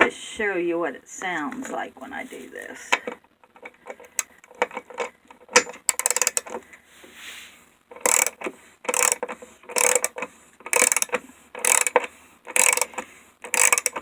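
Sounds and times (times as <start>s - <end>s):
ratchet wrench clicking: 5.6s - 6.6s, 8.0s - 14.0s.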